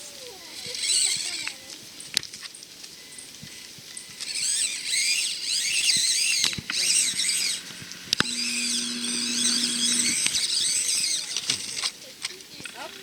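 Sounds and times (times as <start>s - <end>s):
small electric motor whining: 4.0s - 11.9s
low steady hum: 6.6s - 10.5s.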